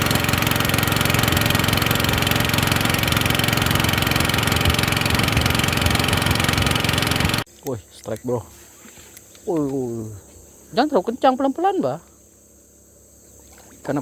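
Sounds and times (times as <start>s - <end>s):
small engine running steadily: 0.0s - 7.5s.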